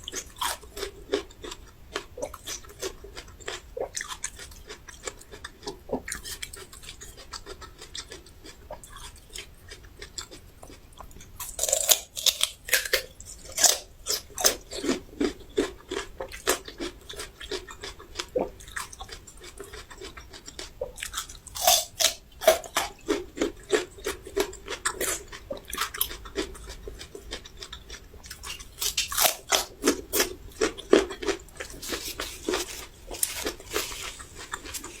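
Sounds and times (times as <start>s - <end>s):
wet chewing: 0.0s - 35.0s
crisp crunching: 11.4s - 16.9s, 28.3s - 35.0s.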